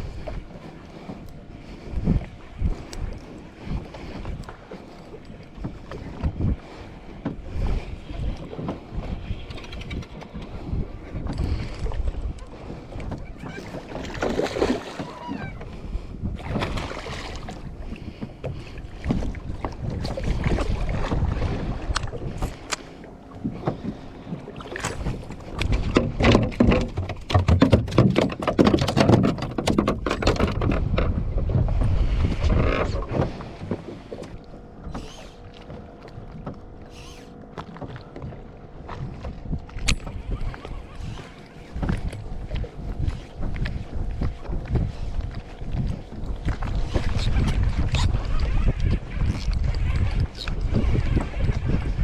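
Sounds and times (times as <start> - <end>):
water around a boat: 0.0 - 52.0
wind: 0.0 - 52.0
sharp clicks and knocks: 25.6 - 31.2.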